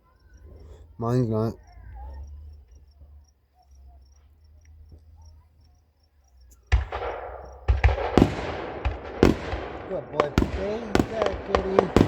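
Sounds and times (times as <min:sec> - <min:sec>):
crickets chirping: 0:00.0 - 0:12.0
firework bangs and crackle: 0:06.7 - 0:12.0.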